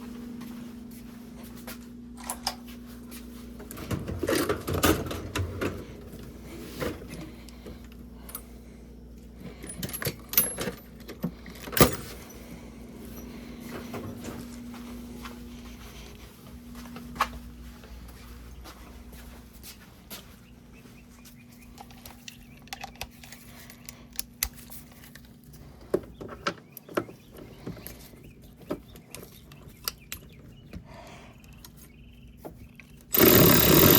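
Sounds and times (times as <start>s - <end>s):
faint steady hum: 0.0s - 26.2s
metal socket tools clinking: 9.6s - 12.0s.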